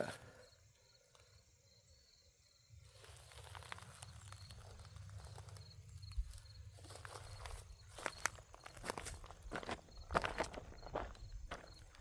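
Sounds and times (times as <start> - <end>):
soft footsteps: 2.9 - 12.0.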